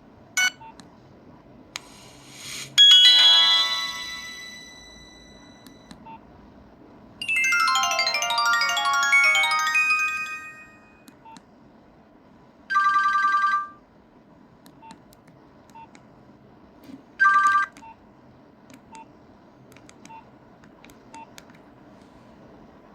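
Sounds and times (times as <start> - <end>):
ringtone melody: 2.8 - 5.6, 7.2 - 11.0.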